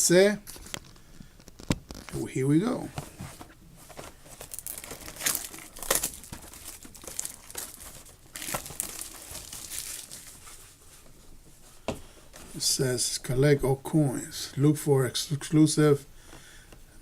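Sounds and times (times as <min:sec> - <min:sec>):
packaging crinkling: 0:03.9 - 0:10.6
packaging ripping: 0:04.3 - 0:10.4.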